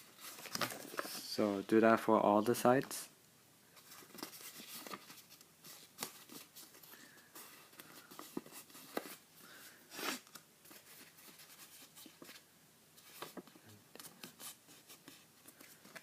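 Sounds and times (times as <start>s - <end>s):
paper crinkling and rustling: 0.0s - 1.6s, 3.8s - 9.2s, 13.0s - 16.0s.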